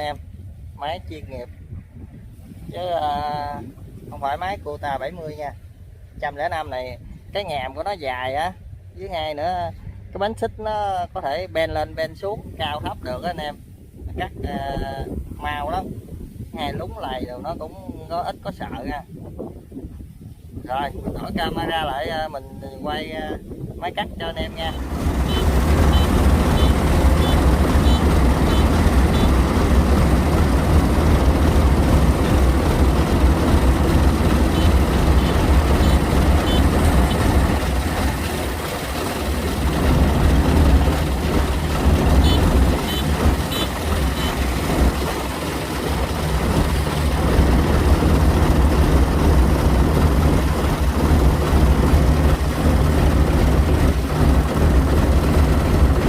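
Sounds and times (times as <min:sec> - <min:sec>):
combine harvester diesel engine: 0:20.7 - 0:56.0.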